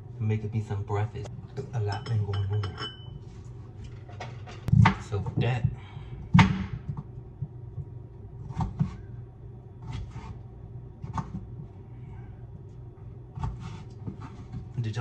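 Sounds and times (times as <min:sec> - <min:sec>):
steady low hum: 0:00.0 - 0:15.0
cookware and utensils clattering: 0:01.6 - 0:03.2.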